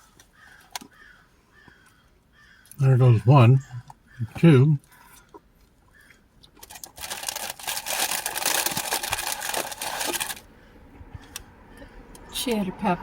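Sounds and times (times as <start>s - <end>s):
paper packaging crinkling: 6.6s - 10.5s.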